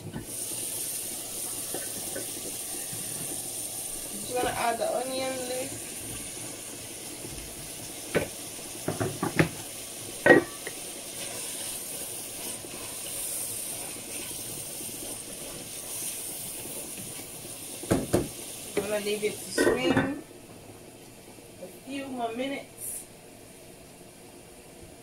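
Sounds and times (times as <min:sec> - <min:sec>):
stew sizzling in a pan: 0:00.0 - 0:25.0.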